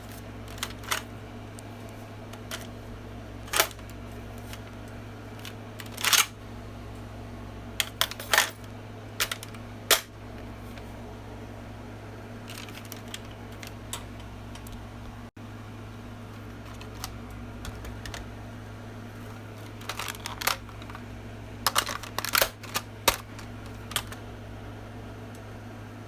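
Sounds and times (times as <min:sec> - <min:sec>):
steady low hum: 0:00.0 - 0:26.0
toy gun plastic clicks and rattles: 0:05.4 - 0:06.3, 0:19.7 - 0:21.0, 0:21.7 - 0:24.2.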